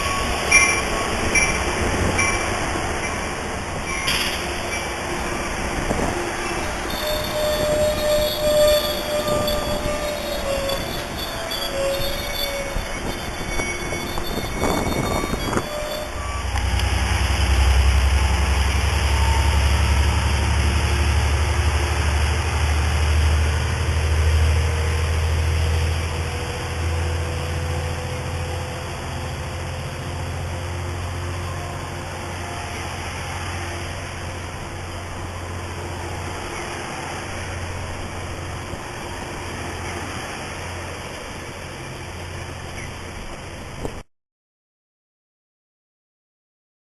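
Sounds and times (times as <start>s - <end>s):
wind noise on microphone: 0.0s - 19.1s, 42.4s - 44.1s
diesel train passing: 0.0s - 44.1s.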